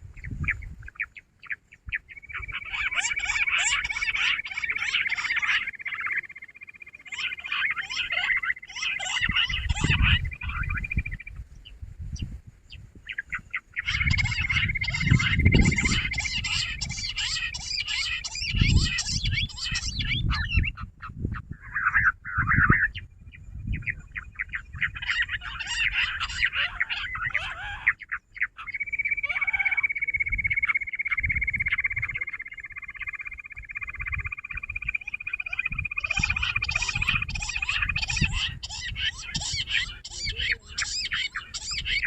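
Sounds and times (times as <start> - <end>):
quail chattering: 0.2 - 11.5, 13.0 - 42.0
low rumbling microphone bumps: 14.0 - 17.1.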